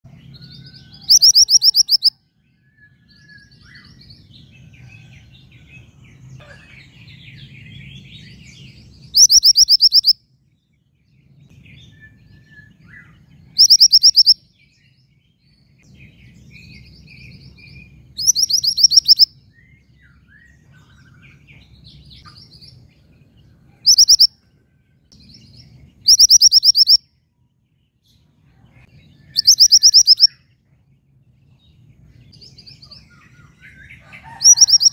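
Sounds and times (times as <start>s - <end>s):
soft bird chirps: 0.1s - 34.9s
high bird trill: 0.4s - 2.2s, 9.0s - 10.2s, 12.2s - 14.6s, 16.7s - 21.4s, 23.8s - 24.4s, 26.0s - 27.1s, 29.2s - 30.4s, 32.4s - 34.9s.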